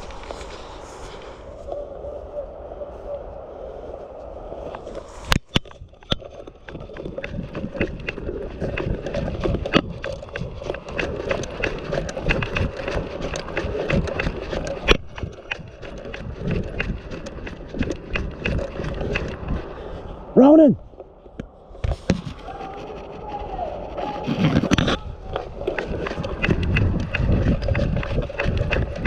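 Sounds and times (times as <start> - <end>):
running footsteps on ground: 4.7 - 21.0, 21.9 - 29.0
kit rattling: 5.7 - 19.7, 24.4 - 29.0.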